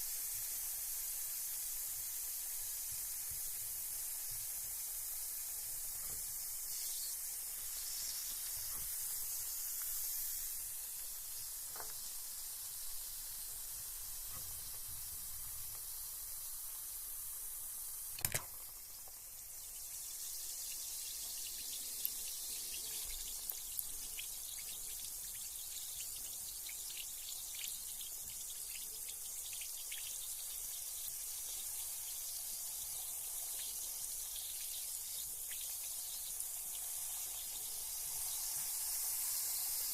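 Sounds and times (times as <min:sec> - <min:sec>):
bath bomb fizzing in water: 0:00.0 - 0:39.9.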